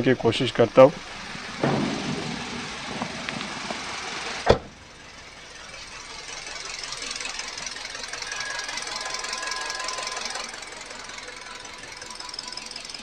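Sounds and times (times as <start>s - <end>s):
engine idling roughly with misfire: 0.0s - 13.0s
sharp thump: 1.6s - 5.0s.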